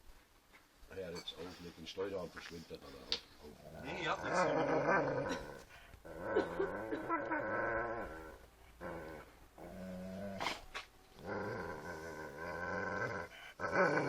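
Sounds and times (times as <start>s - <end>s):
dog growling: 3.5s - 14.0s.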